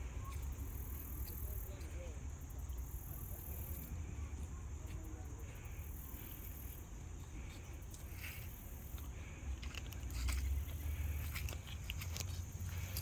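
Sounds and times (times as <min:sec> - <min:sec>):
footsteps walking: 0:07.9 - 0:13.0.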